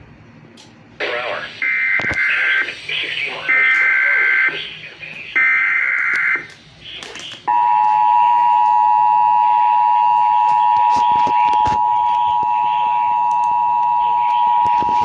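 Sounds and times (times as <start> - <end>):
steady dual alert tone: 7.5 - 15.0.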